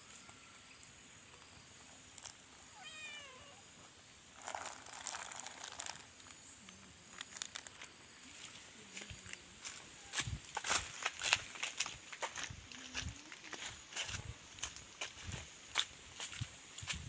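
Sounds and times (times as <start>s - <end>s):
cat meowing: 2.7s - 3.6s
rustling: 4.4s - 7.9s.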